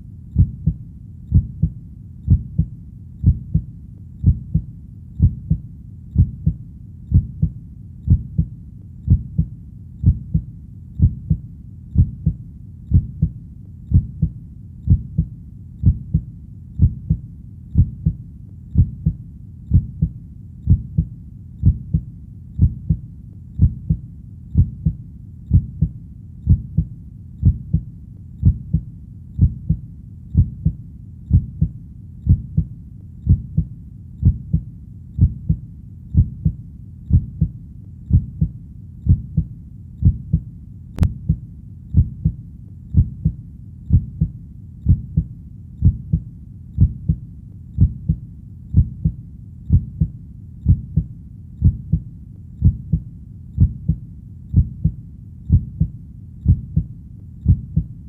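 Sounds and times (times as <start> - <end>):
heartbeat double thump: 0.4 - 5.6, 6.2 - 8.5, 9.1 - 11.4, 12.0 - 17.2, 18.8 - 23.0, 24.6 - 28.8, 29.4 - 29.8, 30.4 - 31.7, 32.3 - 32.7, 33.3 - 34.6, 35.2 - 35.6, 36.2 - 38.5, 39.1 - 40.4, 41.0 - 41.4, 42.0 - 42.4, 43.0 - 44.3, 44.9 - 46.2, 46.8 - 47.2, 47.8 - 48.2, 48.8 - 50.1, 50.7 - 52.0, 52.6 - 53.0, 53.6 - 57.9.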